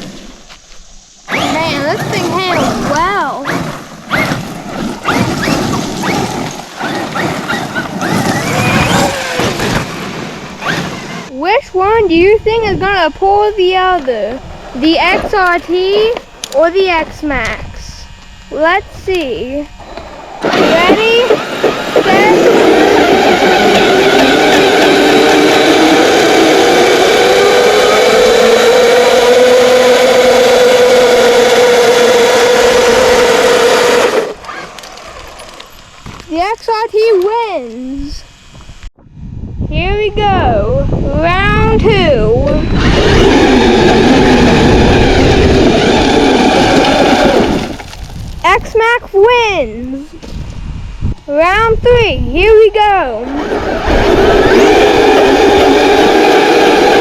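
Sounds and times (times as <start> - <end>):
toy truck electric motor whine: 1.2 - 11.3, 14.8 - 36.2, 41.8 - 48.4, 53.2 - 57.0
tyres and drivetrain rushing: 1.3 - 11.3, 20.4 - 35.7, 42.6 - 48.3, 53.2 - 57.0.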